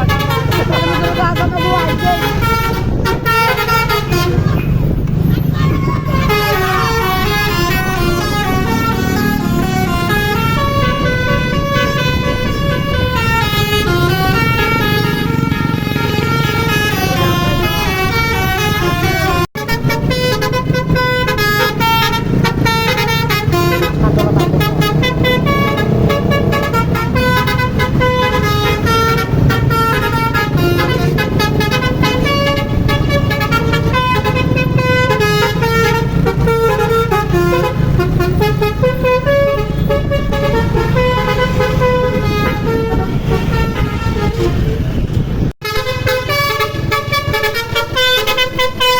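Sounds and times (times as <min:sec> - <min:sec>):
musical air horn melody: 0:00.0 - 0:04.7, 0:06.0 - 0:45.0, 0:45.6 - 0:48.9
steady low rumble: 0:22.1 - 0:36.1.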